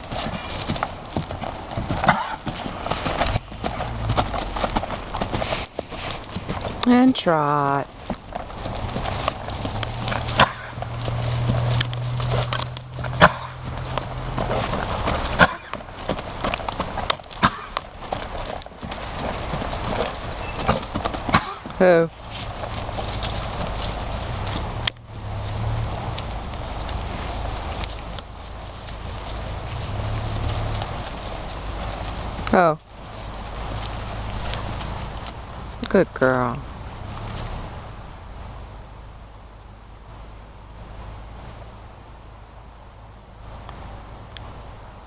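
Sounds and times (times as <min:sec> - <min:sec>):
horse hooves clip-clopping: 0:00.0 - 0:38.8
horse coughing: 0:02.0 - 0:02.6, 0:13.1 - 0:13.7, 0:15.4 - 0:15.8, 0:17.4 - 0:17.8, 0:21.3 - 0:21.8.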